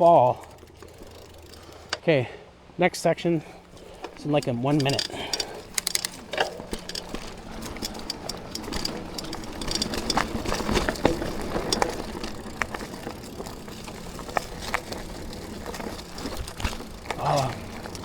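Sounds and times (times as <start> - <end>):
bike chain rattling clicks: 0.0 - 2.0, 3.6 - 18.0
bike tyres rolling on dirt: 0.0 - 18.0.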